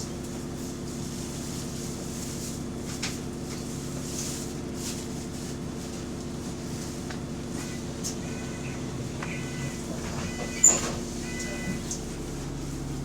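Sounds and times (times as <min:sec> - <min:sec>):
bus diesel engine hum: 0:00.0 - 0:13.0.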